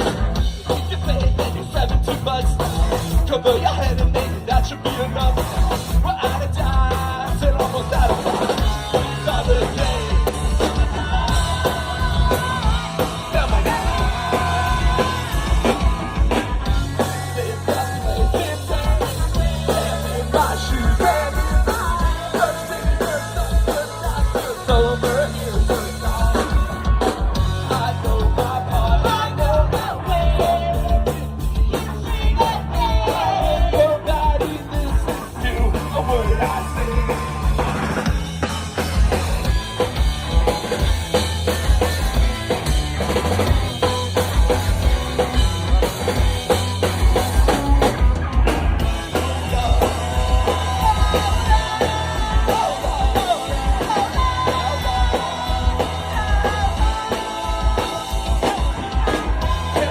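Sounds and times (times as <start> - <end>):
pop-punk band playing live: 0.0 - 59.9.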